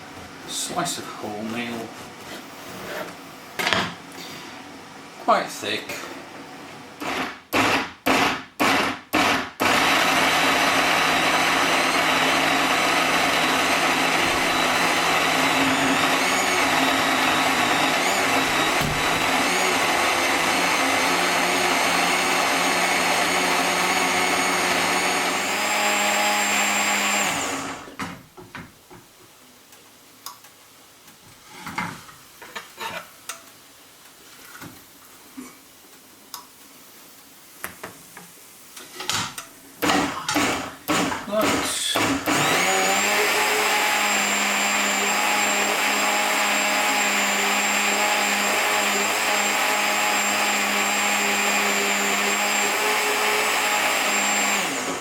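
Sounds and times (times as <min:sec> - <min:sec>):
electric blender motor: 0:07.0 - 0:28.0, 0:39.8 - 0:55.0.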